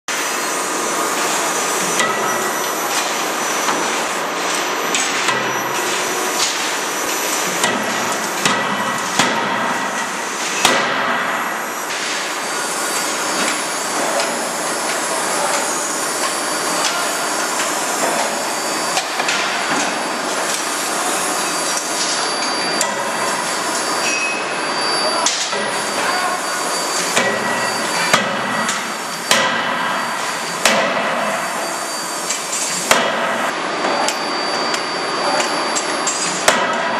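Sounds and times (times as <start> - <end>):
loud machinery noise: 0.1 - 36.9
forging hammer striking hot metal: 7.5 - 10.0, 10.6 - 11.4, 27.1 - 31.4, 32.9 - 33.5, 36.4 - 36.9.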